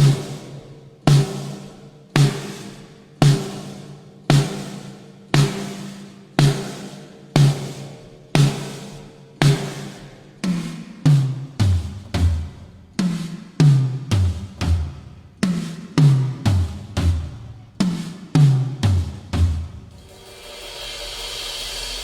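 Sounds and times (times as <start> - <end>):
drum toms struck: 0.0 - 22.0
steady hiss: 19.9 - 22.0.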